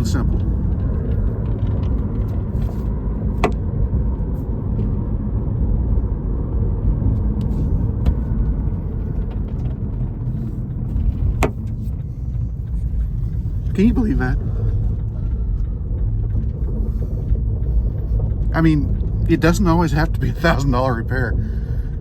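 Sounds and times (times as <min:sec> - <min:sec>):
road rumble inside car: 0:00.0 - 0:22.0.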